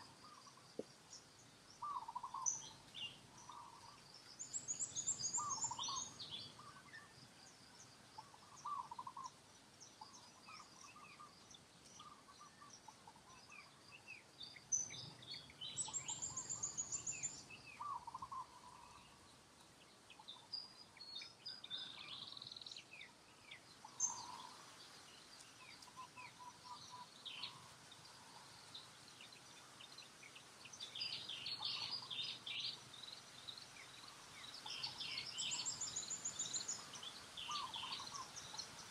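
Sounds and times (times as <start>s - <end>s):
birds chirping and trilling: 0.0s - 38.9s
faint background hiss: 0.0s - 38.9s.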